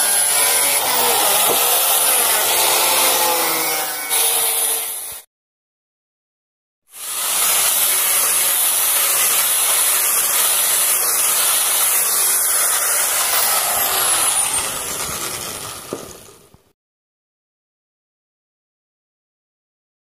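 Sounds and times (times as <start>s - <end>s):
electric wood planer hissing: 0.0s - 5.2s, 6.9s - 16.7s.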